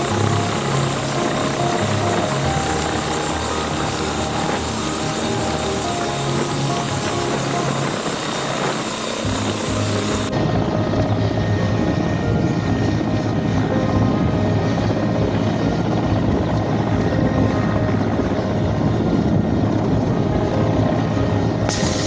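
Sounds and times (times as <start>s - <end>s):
helicopter rotor and engine: 0.0s - 22.0s.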